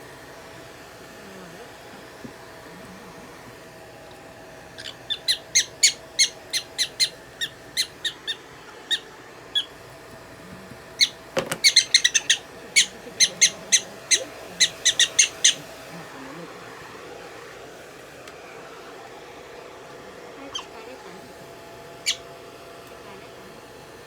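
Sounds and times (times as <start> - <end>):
prairie dog chirping: 1.2 - 16.0, 20.4 - 21.2, 22.0 - 22.3.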